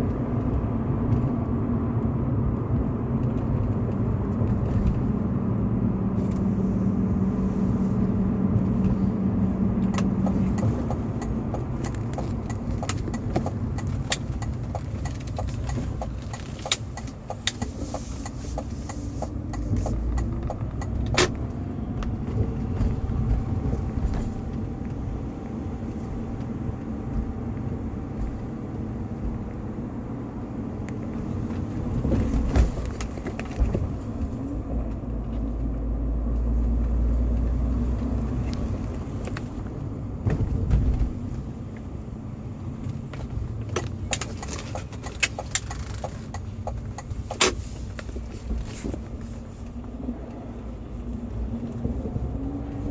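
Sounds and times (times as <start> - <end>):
car engine running: 0.0 - 52.9
regular ticking: 9.9 - 21.2.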